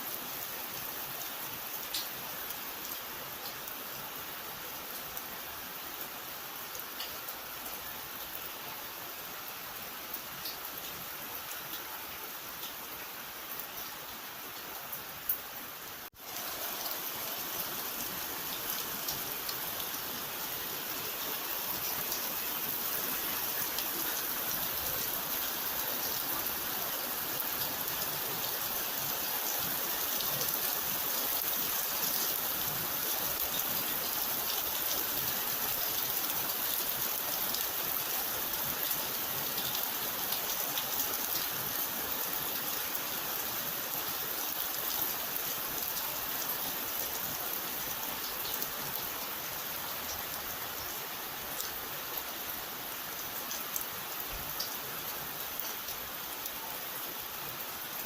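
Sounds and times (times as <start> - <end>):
steady rainfall: 0.0 - 58.0.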